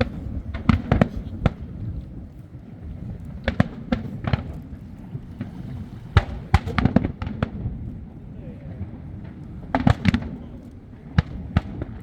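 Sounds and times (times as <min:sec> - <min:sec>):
fireworks bursting: 0:00.0 - 0:02.0, 0:03.0 - 0:07.8.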